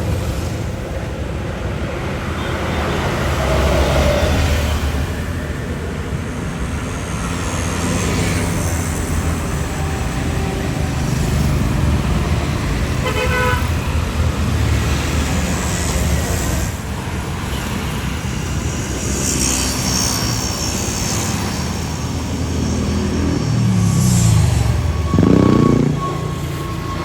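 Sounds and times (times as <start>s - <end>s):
road traffic rumble: 0.0s - 27.0s
vehicle horn toot: 13.0s - 13.7s.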